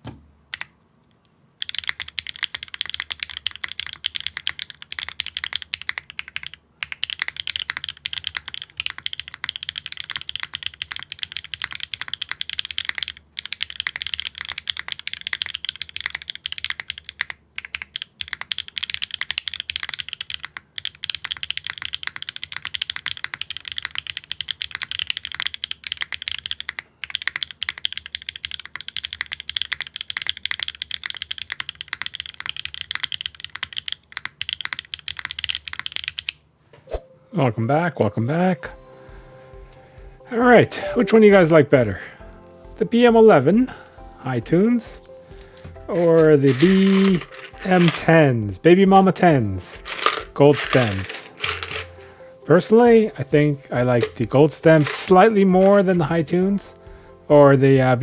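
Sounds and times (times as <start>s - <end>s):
mechanical keyboard typing: 1.6s - 36.4s, 44.8s - 52.1s, 53.5s - 56.7s.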